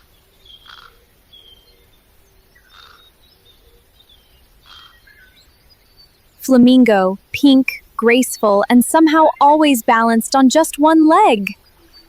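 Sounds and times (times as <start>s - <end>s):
faint bird chirps: 0.0s - 6.4s
low steady hum: 6.3s - 11.6s.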